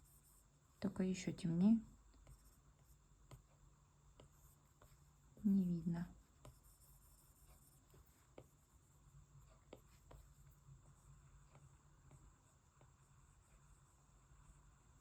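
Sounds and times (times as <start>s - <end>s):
steady low hum: 0.0s - 15.0s
stylus tapping on tablet screen: 6.2s - 13.7s.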